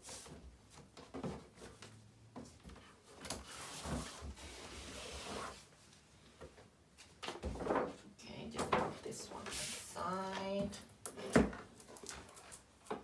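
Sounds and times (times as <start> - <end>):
rustling and sliding of packaging: 2.8 - 6.0.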